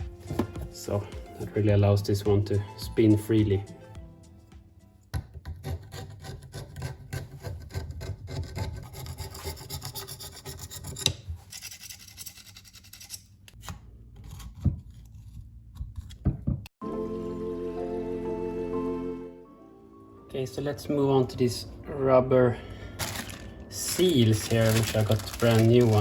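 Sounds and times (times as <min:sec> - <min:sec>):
scraping and rubbing on parts: 0:05.5 - 0:13.6.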